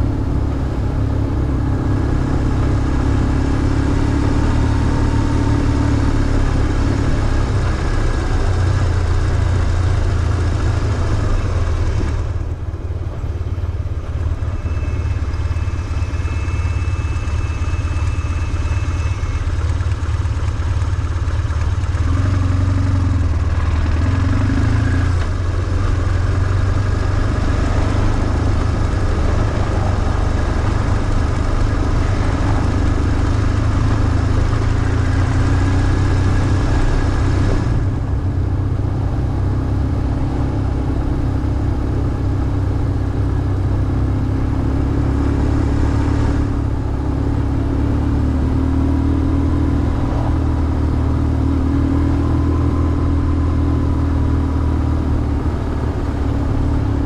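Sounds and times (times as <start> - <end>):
motorcycle engine running: 0.0 - 57.0
wind and road hiss: 21.8 - 57.0.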